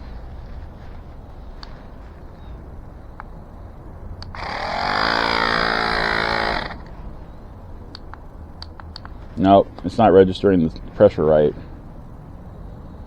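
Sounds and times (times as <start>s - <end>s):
electric compressor motor buzzing: 4.2s - 7.0s
light handling clicks: 7.9s - 9.9s.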